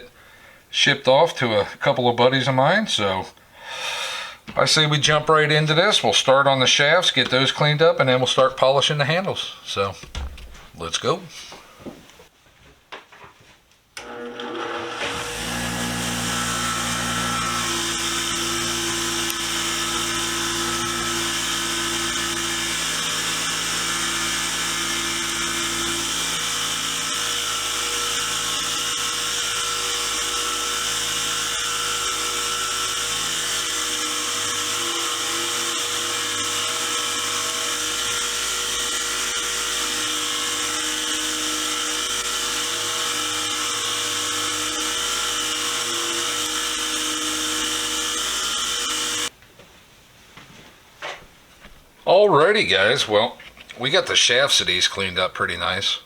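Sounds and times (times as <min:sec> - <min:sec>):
power tool running: 0:14.0 - 0:49.4.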